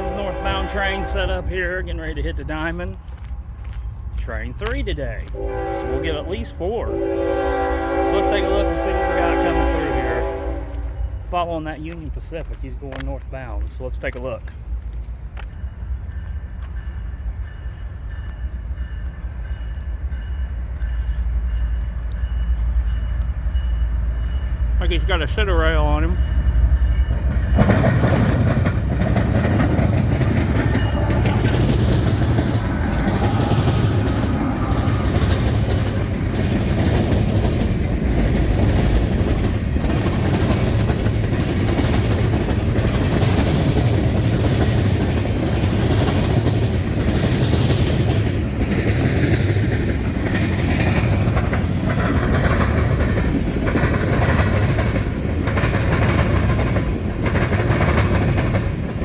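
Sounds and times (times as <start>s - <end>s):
train wheels clacking over rail joints: 27.1s - 59.0s.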